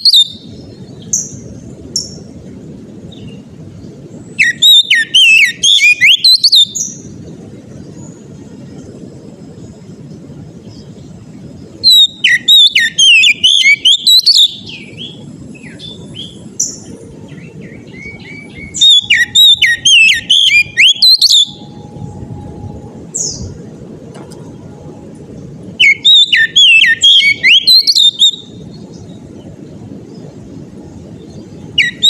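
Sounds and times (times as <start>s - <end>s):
bird whistles and chirps: 0.0s - 1.4s, 4.4s - 7.1s, 11.8s - 22.0s, 25.8s - 29.2s, 31.3s - 32.0s
steady low background noise: 0.0s - 32.0s.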